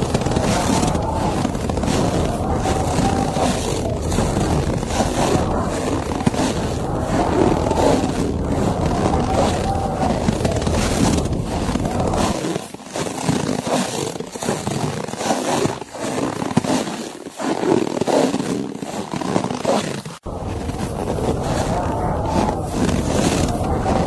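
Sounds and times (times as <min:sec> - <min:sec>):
blizzard wind gusting: 0:00.0 - 0:12.4, 0:20.3 - 0:24.0.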